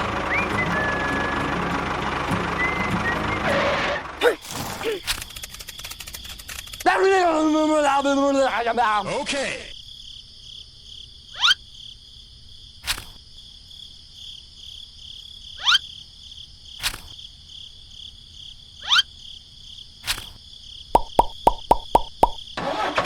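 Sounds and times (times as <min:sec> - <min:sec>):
sharp clicks: 0:05.0 - 0:07.0, 0:12.8 - 0:13.2, 0:16.8 - 0:17.2, 0:20.0 - 0:20.4, 0:21.0 - 0:22.5.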